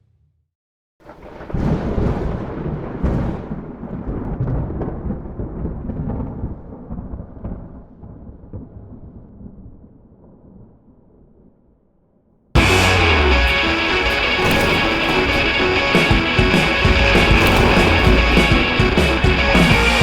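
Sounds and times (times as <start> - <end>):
long deep rumble: 12.6 - 20.0
sharp crackles: 12.6 - 20.0.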